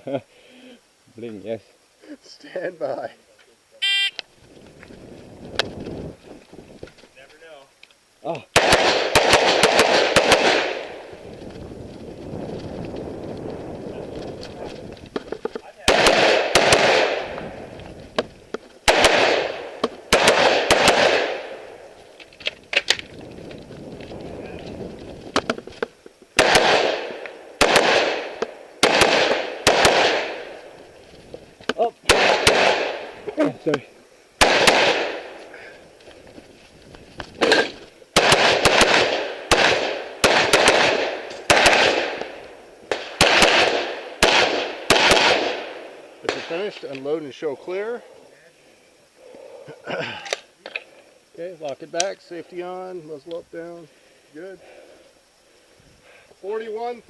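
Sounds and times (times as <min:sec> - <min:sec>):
rifle shots with echo: 0:08.6 - 0:11.0, 0:15.8 - 0:17.5, 0:18.8 - 0:21.7, 0:26.4 - 0:30.6, 0:32.0 - 0:33.2, 0:34.4 - 0:35.4, 0:37.4 - 0:46.8.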